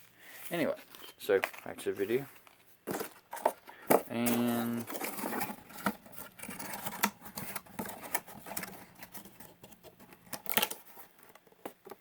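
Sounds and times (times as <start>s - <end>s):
box and paper packaging rustling: 0.0s - 12.0s.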